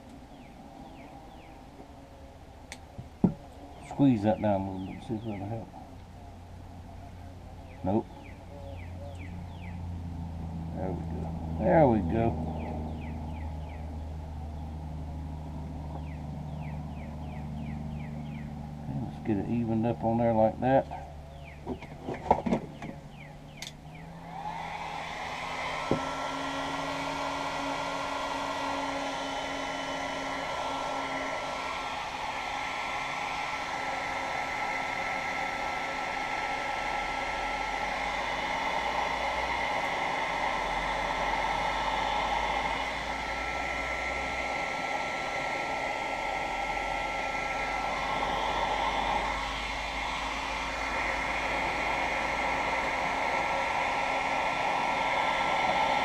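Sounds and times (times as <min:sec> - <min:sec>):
fan motor whine: 0:00.0 - 0:56.0
heat gun blowing: 0:23.6 - 0:56.0.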